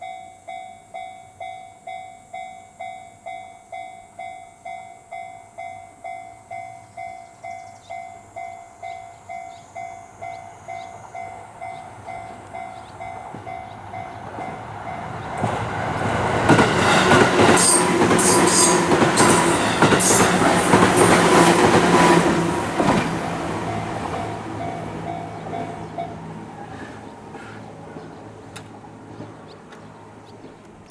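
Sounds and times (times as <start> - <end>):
train wheels clacking over rails: 10.7 - 30.6.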